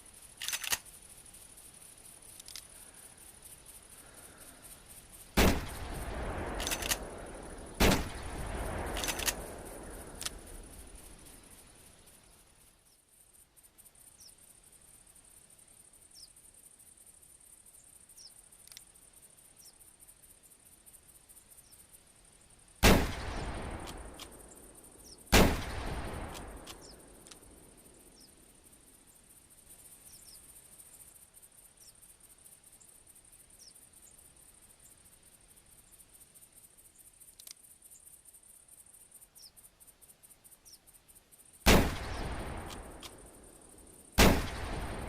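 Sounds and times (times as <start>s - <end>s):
light clicks of rifle lever: 0.4s - 1.0s, 2.3s - 2.7s, 6.5s - 7.1s, 8.9s - 10.4s, 18.6s - 18.9s, 23.8s - 24.4s, 26.3s - 27.5s, 37.3s - 37.6s, 42.6s - 43.2s
rifle shots with echo: 5.4s - 10.6s, 22.8s - 24.4s, 25.3s - 27.0s, 41.7s - 43.4s, 44.2s - 45.0s.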